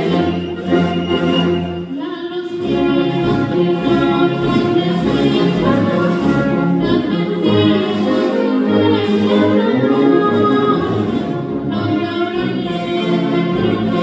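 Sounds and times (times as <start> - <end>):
choir singing: 0.0 - 14.0
orchestral accompaniment: 0.0 - 14.0.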